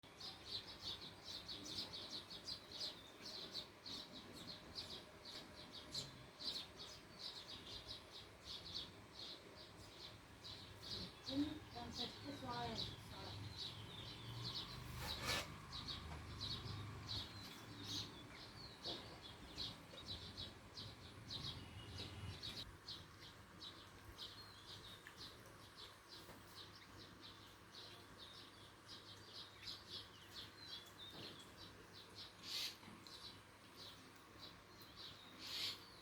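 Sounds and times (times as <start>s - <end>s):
small birds chirping: 0.0s - 36.0s.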